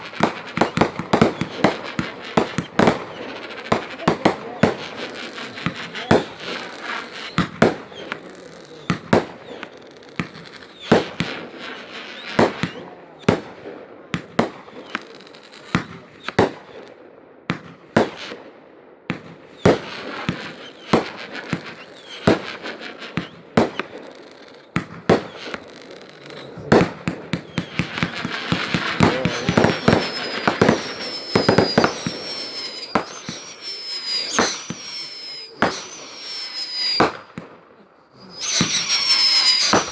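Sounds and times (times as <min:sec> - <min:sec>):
fireworks crackling: 0:00.0 - 0:12.8, 0:19.2 - 0:39.9
fireworks bangs and pops: 0:00.0 - 0:18.5, 0:19.1 - 0:39.9
high whining tones: 0:28.5 - 0:37.3, 0:38.1 - 0:39.9.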